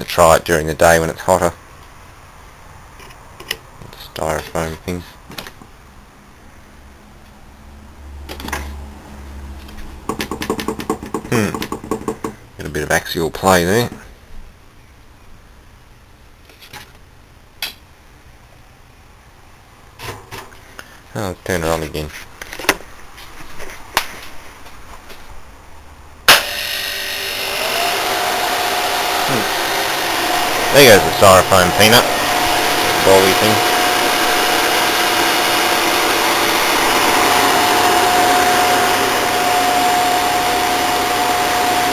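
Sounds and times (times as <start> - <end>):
fan motor whine: 26.3 - 41.9
air conditioner humming: 27.2 - 41.9.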